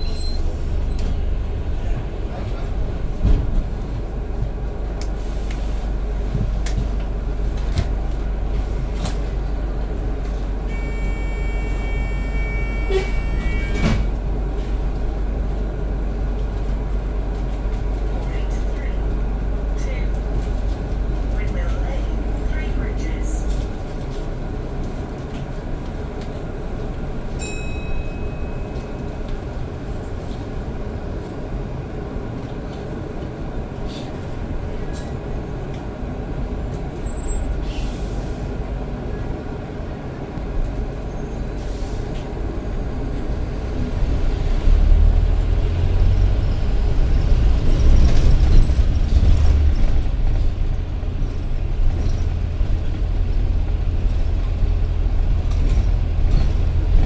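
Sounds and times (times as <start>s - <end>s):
bus engine rumble: 0.0s - 57.0s
short beep: 10.7s - 14.0s.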